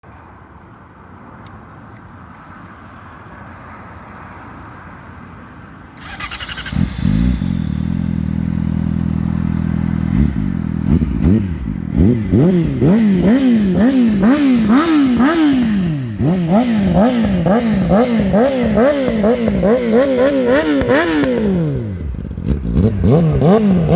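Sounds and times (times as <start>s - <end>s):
motorcycle starter cranking: 6.0s - 7.7s
engine revving with throttle blips: 6.0s - 23.9s
motorcycle engine idling: 6.0s - 23.9s.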